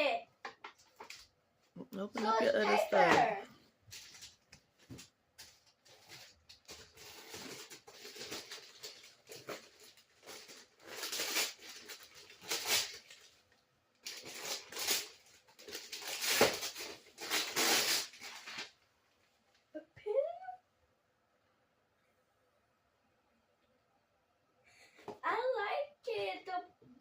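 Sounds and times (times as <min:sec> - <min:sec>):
wrapping paper tearing and crinkling: 0:05.4 - 0:18.8.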